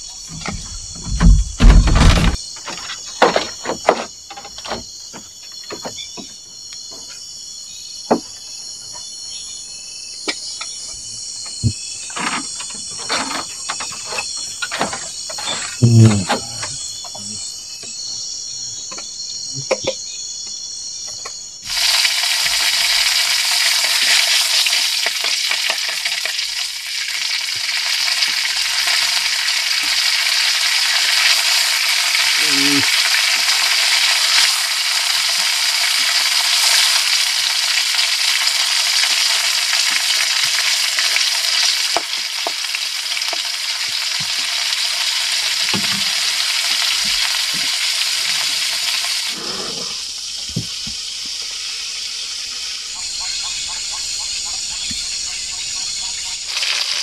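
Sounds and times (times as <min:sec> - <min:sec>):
fish frying in oil: 0:21.6 - 0:49.3, 0:50.0 - 0:57.0.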